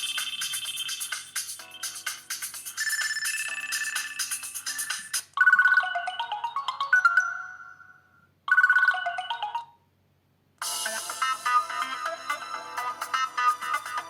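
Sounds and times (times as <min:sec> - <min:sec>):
electronic ringtone with clicking beats: 0:00.0 - 0:09.8
ringtone falling run of notes: 0:00.0 - 0:09.8, 0:10.6 - 0:14.0.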